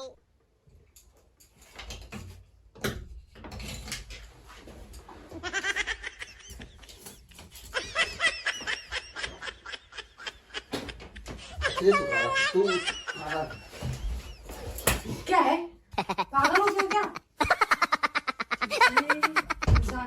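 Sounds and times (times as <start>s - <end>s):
person giggling: 7.7s - 14.3s, 15.9s - 20.0s.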